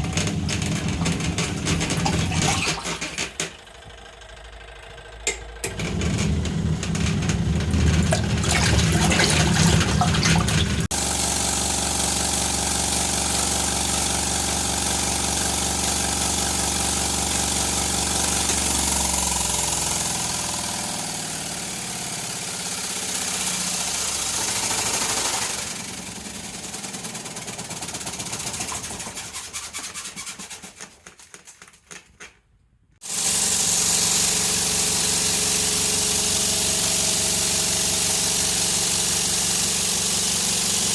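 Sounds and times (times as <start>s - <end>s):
washing machine motor humming: 0.0s - 29.4s
rushing water: 8.2s - 10.9s.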